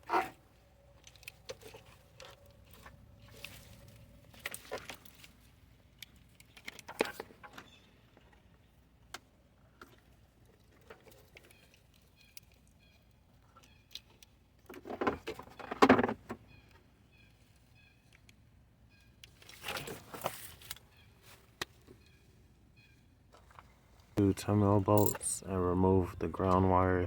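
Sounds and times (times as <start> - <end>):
tools clattering and rattling: 24.9 - 25.4.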